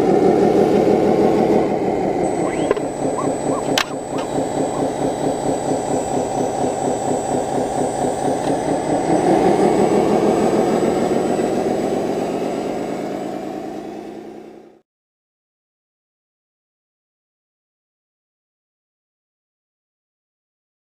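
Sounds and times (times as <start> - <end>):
simulated diesel engine idling: 0.3 - 14.8.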